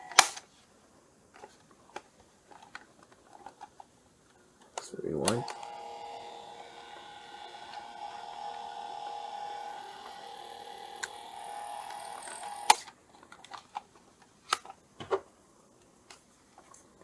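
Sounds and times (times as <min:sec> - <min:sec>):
cassette motor whine: 0:05.3 - 0:12.8.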